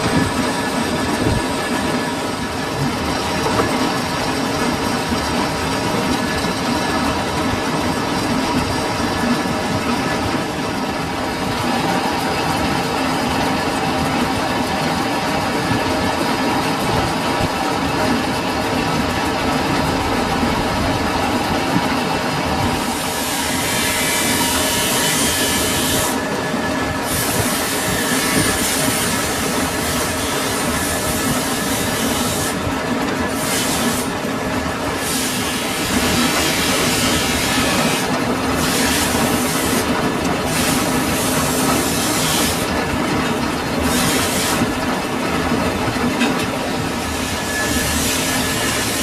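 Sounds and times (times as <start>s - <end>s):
metal lathe humming: 0.0s - 49.0s
cutting tool hissing on steel: 22.8s - 26.3s, 27.0s - 32.6s, 33.3s - 34.2s, 34.9s - 39.9s, 47.0s - 49.0s.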